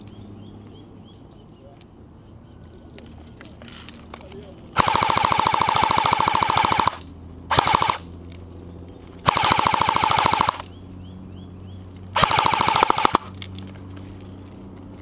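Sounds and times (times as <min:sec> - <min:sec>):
airsoft rifle firing bursts: 0:04.8 - 0:08.1, 0:09.2 - 0:10.7, 0:12.2 - 0:13.4.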